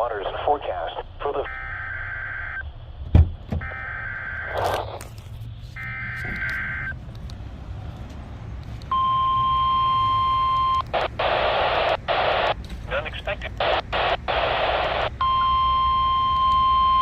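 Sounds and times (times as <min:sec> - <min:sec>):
steady alarm tone: 0:01.5 - 0:02.7.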